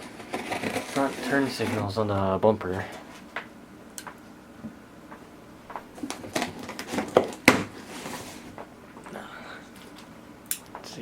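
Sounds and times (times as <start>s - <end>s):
package rustling and clicking: 5.7s - 8.7s.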